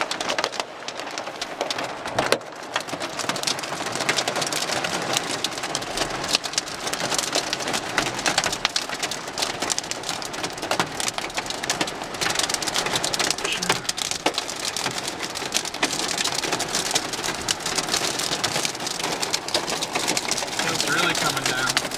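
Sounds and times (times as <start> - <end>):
hailstones ticking: 0.0 - 21.9
heavy rain hiss: 6.1 - 21.9.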